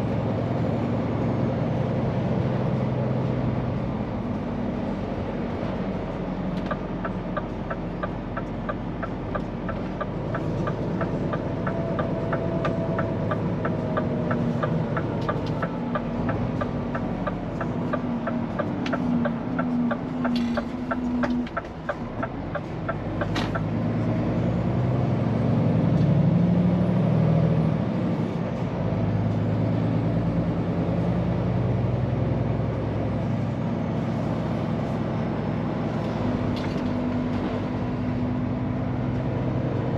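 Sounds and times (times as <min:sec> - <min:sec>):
truck diesel engine running: 0:00.0 - 0:25.7.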